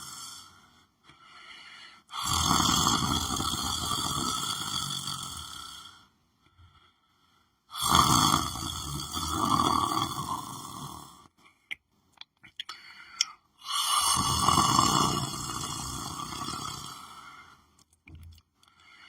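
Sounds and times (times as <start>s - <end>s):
person snoring: 0.0s - 0.8s, 1.8s - 6.1s, 7.7s - 11.3s, 13.6s - 17.7s.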